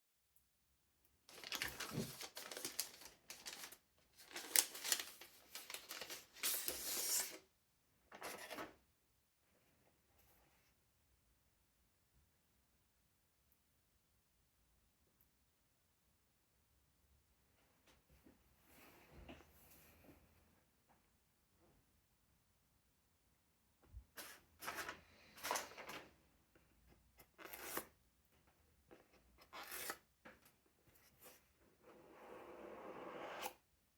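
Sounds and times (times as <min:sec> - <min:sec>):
paper rustling and scraping: 0:01.3 - 0:07.4, 0:24.2 - 0:26.1, 0:27.2 - 0:27.9, 0:29.0 - 0:30.1.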